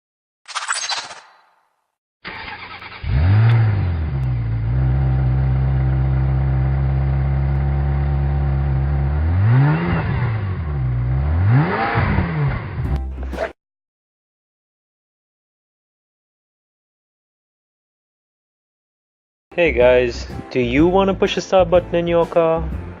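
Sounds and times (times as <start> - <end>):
car starter cranking: 2.2 - 3.8
car engine idling and revving: 2.3 - 13.0.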